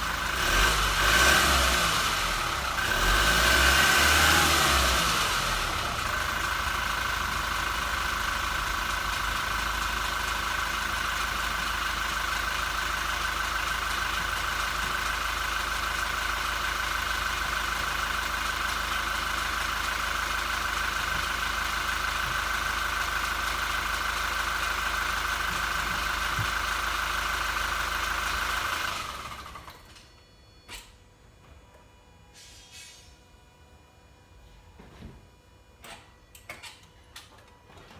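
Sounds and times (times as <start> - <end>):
diesel engine idling: 0.0 - 30.0.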